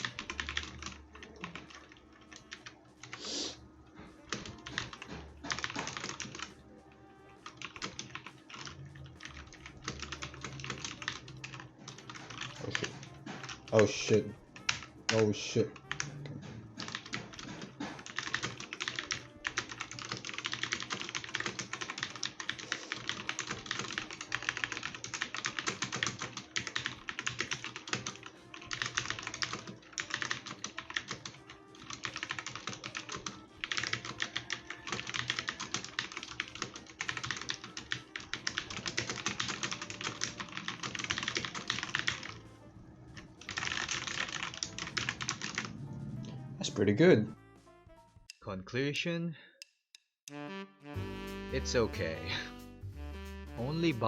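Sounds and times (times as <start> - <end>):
mechanical keyboard typing: 0.0 - 3.2, 4.3 - 6.5, 7.4 - 16.1, 16.8 - 42.4, 43.2 - 45.7.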